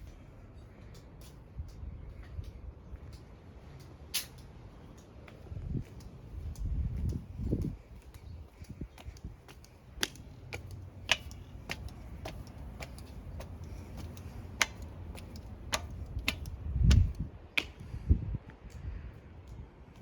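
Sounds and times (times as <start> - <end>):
heavy low thumps: 15.7 - 17.3.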